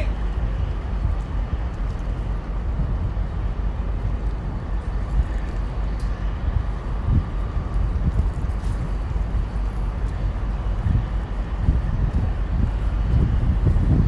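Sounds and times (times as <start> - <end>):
low outdoor rumble: 0.0 - 14.0.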